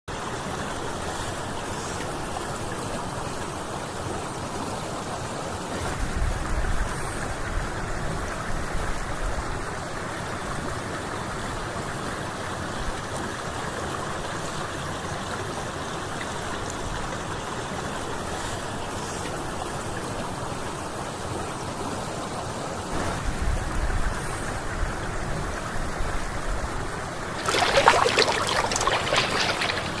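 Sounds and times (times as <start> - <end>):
water flowing: 0.1 - 8.1, 27.0 - 30.0.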